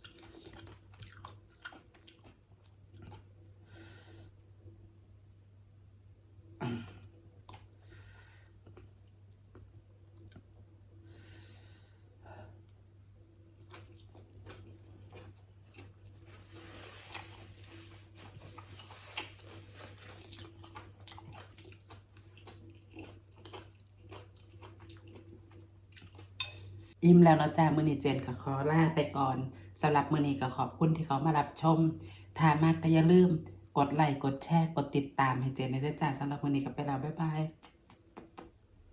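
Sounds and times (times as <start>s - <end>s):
person chewing and eating: 0.0s - 3.8s, 6.6s - 10.8s, 13.2s - 27.0s
steady low hum: 0.0s - 38.9s
small clicks of eating: 8.6s - 10.7s, 37.5s - 38.6s.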